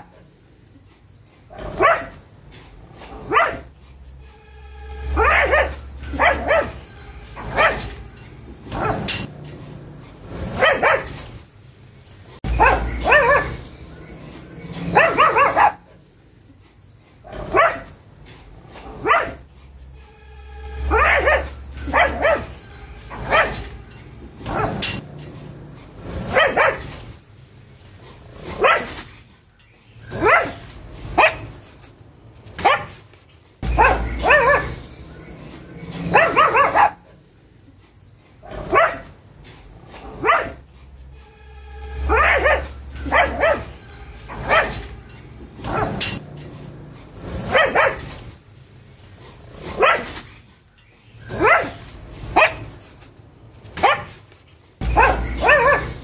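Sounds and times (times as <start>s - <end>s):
dog barking: 1.5s - 2.2s, 3.1s - 3.7s, 5.1s - 6.8s, 7.4s - 8.0s, 8.7s - 9.3s, 10.4s - 11.2s, 12.4s - 13.7s, 14.8s - 16.0s, 17.3s - 18.0s, 18.8s - 19.5s, 20.8s - 23.7s, 24.4s - 25.0s, 26.2s - 27.0s, 28.5s - 29.0s, 30.1s - 31.6s, 32.6s - 33.0s, 33.6s - 35.3s, 36.0s - 37.0s, 38.4s - 39.1s, 40.0s - 40.6s, 42.0s - 44.9s, 45.6s - 46.2s, 47.4s - 48.2s, 49.6s - 50.2s, 51.2s - 52.8s, 53.8s - 54.2s, 54.8s - 56.0s.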